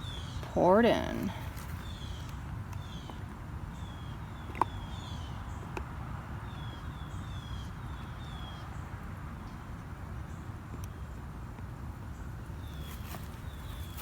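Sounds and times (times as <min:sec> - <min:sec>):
songbird chirping: 0:12.1 - 0:14.0.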